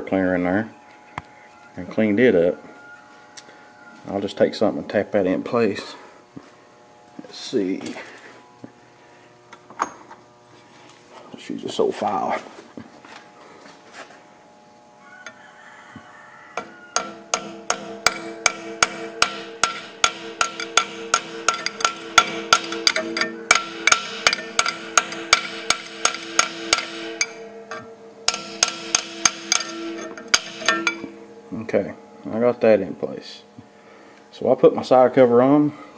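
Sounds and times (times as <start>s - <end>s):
metal file tapping metal: 16.6s - 31.2s.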